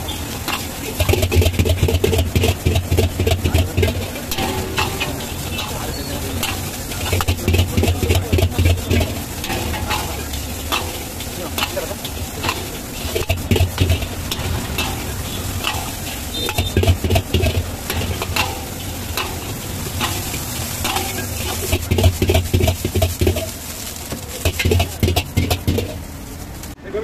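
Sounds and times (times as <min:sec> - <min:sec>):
food sizzling: 0:00.0 - 0:26.8
metal spatula scraping pan: 0:00.4 - 0:23.6, 0:24.4 - 0:26.1.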